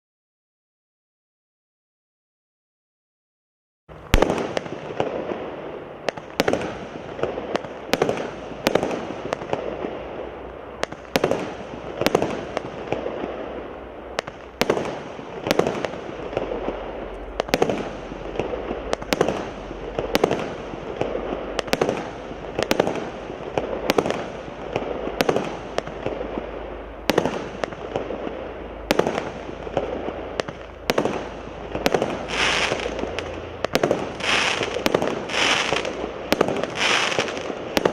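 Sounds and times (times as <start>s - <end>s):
firework bursts popping and crackling: 3.9s - 37.9s
firework launch shots: 3.9s - 37.9s.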